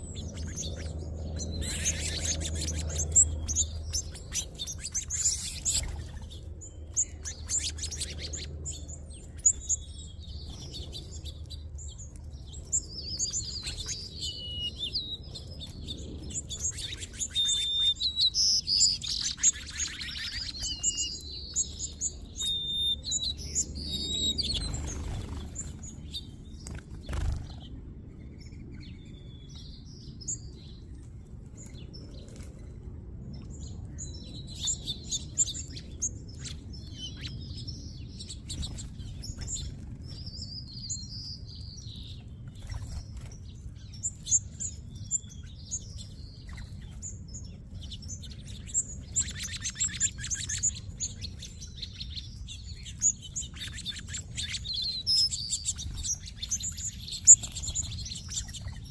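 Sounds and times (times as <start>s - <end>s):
small birds chirping and twittering: 0.0s - 58.9s.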